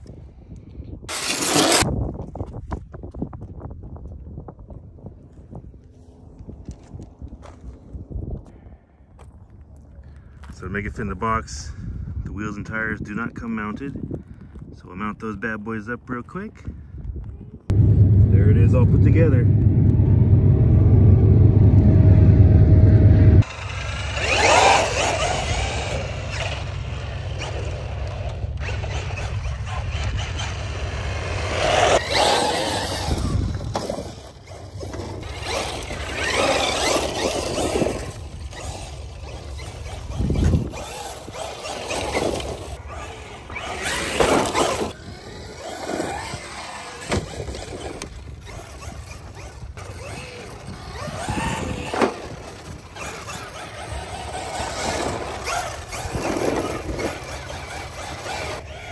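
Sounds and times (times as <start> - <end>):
low rumble: 17.6 - 24.4.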